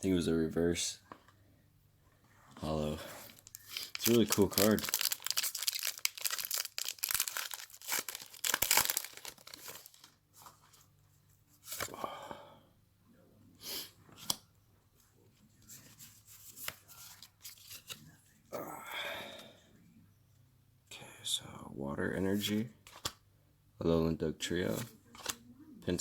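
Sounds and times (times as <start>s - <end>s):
wrapper rustling: 2.6s - 10.6s
foil wrapper crinkling and tearing: 3.2s - 10.2s.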